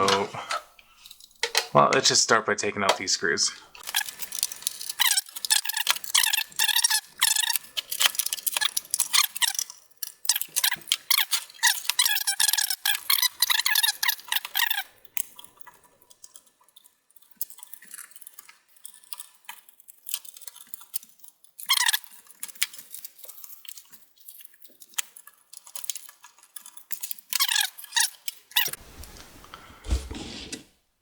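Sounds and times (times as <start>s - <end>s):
handling noise: 0.0s - 1.8s, 28.6s - 30.7s
screwdriver clicking and squeaking: 3.8s - 28.8s.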